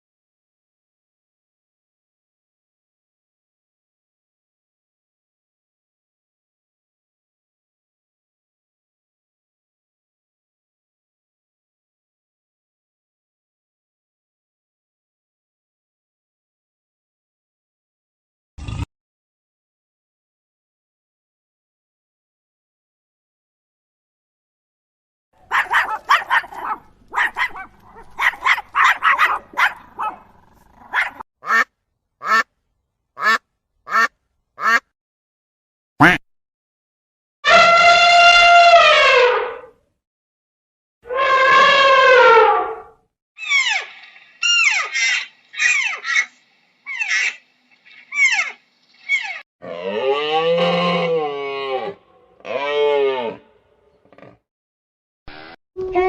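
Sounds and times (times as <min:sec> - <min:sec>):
animal cries: 0:25.4 - 0:31.6, 0:43.4 - 0:53.5
ducks quacking: 0:30.9 - 0:32.4, 0:33.2 - 0:34.8, 0:36.0 - 0:36.2.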